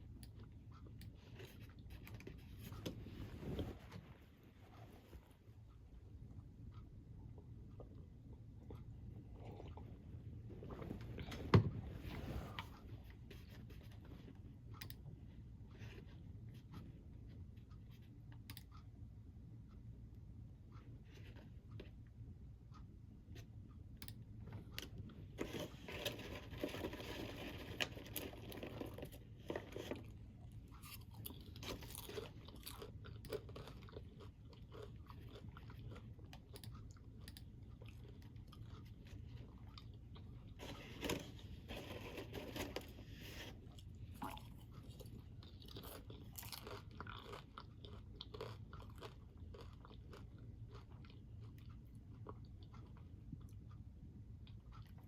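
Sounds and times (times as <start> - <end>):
steady low hum: 0.0 - 55.0
crunchy snack chewing: 25.4 - 43.0, 43.7 - 53.0.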